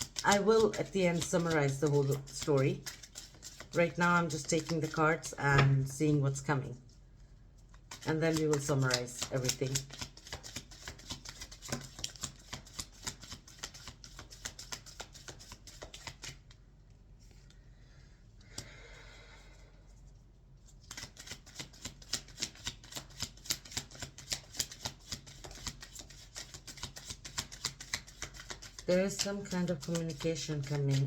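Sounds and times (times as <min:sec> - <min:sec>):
cards being shuffled by hand: 0:00.0 - 0:05.0, 0:07.7 - 0:16.6, 0:20.6 - 0:31.0.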